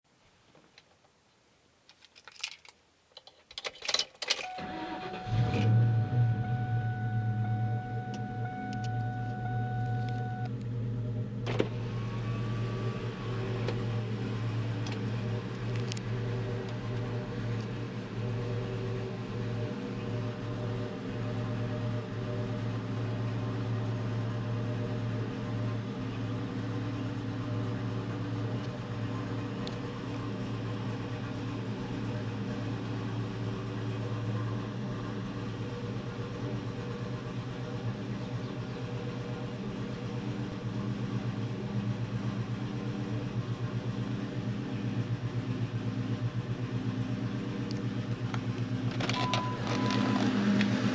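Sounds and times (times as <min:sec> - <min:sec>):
car engine idling rough: 0:04.6 - 0:50.9
starter clicks: 0:07.2 - 0:10.7, 0:47.6 - 0:50.9.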